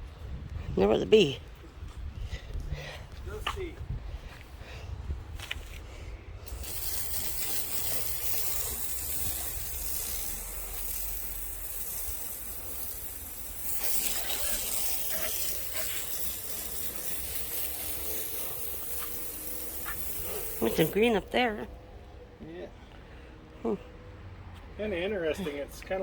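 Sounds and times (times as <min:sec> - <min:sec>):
saw blade hissing through wood: 0:06.4 - 0:21.4.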